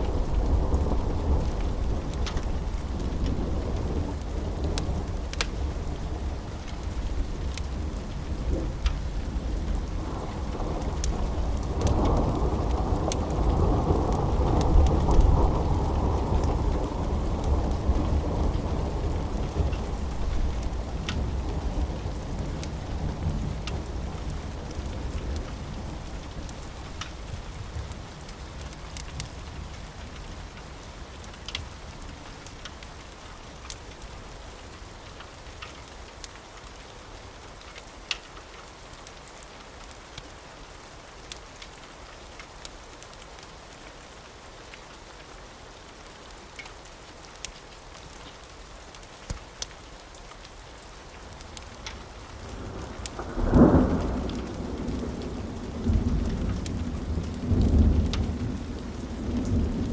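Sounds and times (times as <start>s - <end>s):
steady rain: 0.0s - 59.9s
thunder rumbling: 52.1s - 59.9s.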